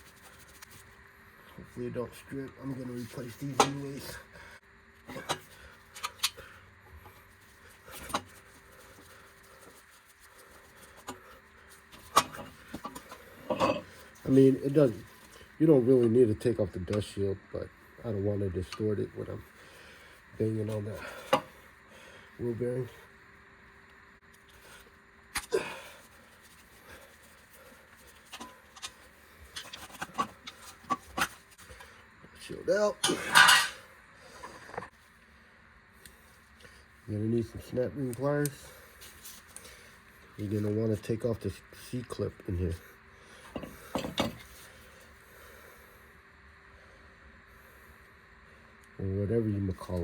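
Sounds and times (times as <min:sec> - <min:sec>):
faint handling sounds: 0:00.0 - 0:04.3, 0:04.9 - 0:17.2, 0:25.9 - 0:42.8.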